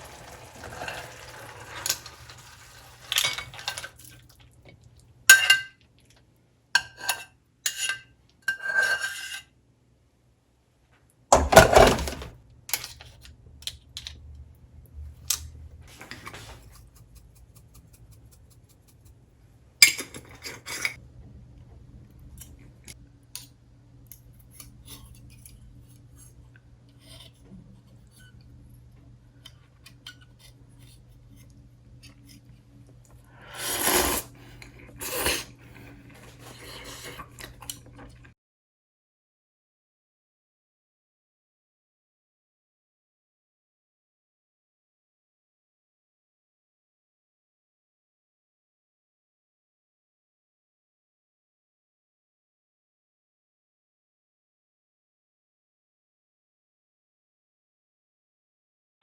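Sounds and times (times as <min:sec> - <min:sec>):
dishes and utensils clinking: 0:00.2 - 0:04.2, 0:05.3 - 0:05.8, 0:19.8 - 0:21.0
faint steady hum: 0:12.2 - 0:38.3.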